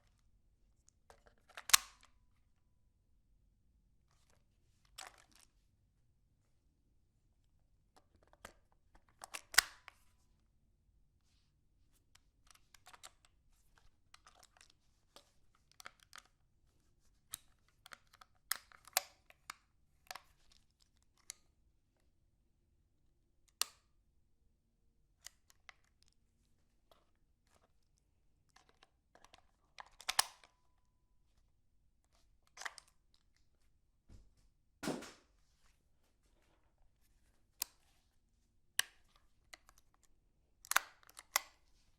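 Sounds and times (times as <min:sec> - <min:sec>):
rifle parts clicking and rattling: 0:28.5 - 0:30.5.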